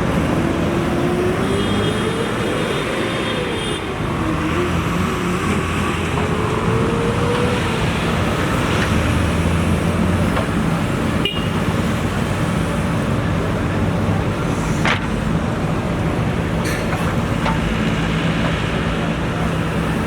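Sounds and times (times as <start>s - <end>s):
diesel engine running: 4.1s - 20.0s.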